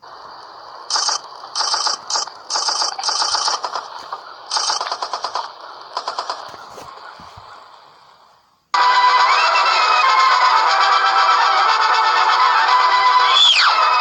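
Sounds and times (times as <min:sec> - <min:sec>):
faint hiss: 0:00.0 - 0:08.8
fast rattling clicks: 0:00.9 - 0:06.7.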